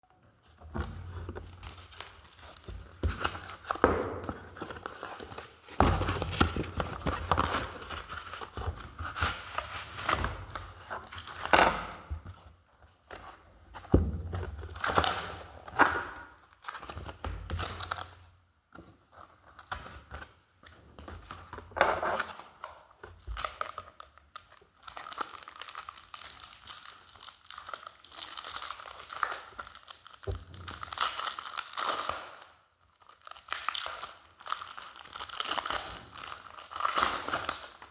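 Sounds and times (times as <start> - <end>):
packaging torn and crinkled: 23.2 - 37.9.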